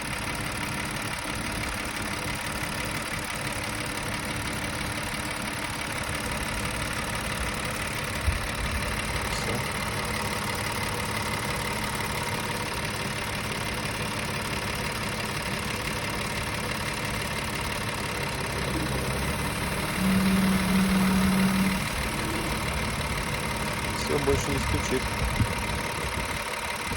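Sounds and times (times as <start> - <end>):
car engine idling: 0.0 - 26.9
engine knock: 0.0 - 26.9
steady low hum: 18.1 - 25.9.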